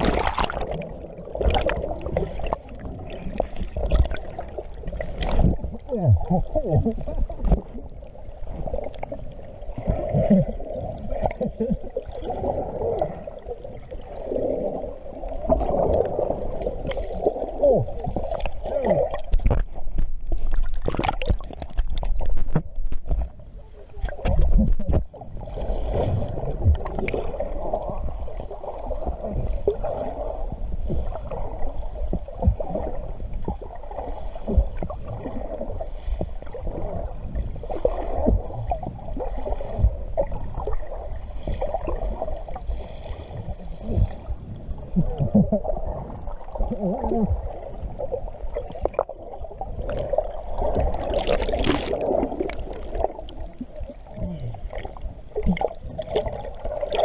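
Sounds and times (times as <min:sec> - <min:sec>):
water splash: 0:00.0 - 0:07.8, 0:15.4 - 0:23.3, 0:48.5 - 0:53.5
water sloshing and gurgling: 0:00.0 - 0:57.0.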